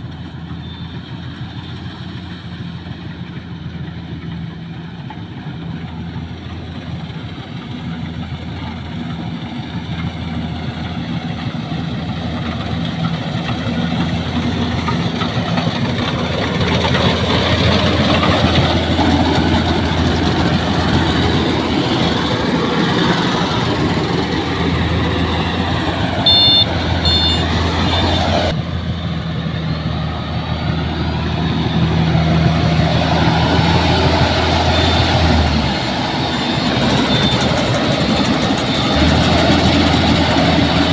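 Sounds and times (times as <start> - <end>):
combine harvester running: 0.0 - 40.9
short high beeps: 26.2 - 28.4, 34.5 - 35.4, 36.4 - 37.7.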